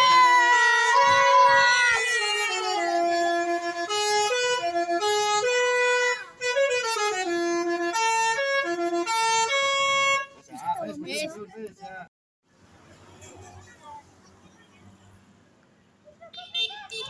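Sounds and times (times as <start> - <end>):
musical bus horn playing a tune: 0.0 - 10.4.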